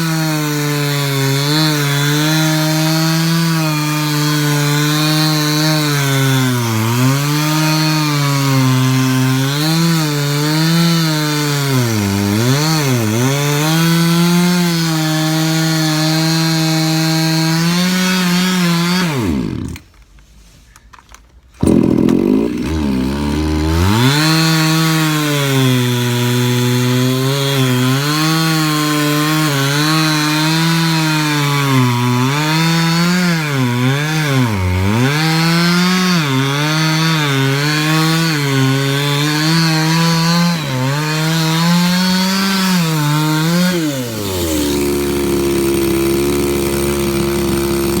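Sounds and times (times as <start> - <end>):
chainsaw cutting wood: 0.0 - 20.0, 21.6 - 48.0
chainsaw idling: 5.6 - 19.9, 21.6 - 37.2, 39.1 - 48.0.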